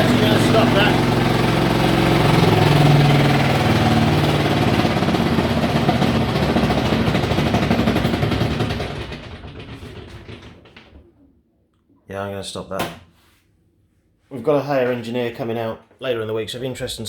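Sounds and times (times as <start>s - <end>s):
washing machine spinning with rattling: 0.0s - 11.4s.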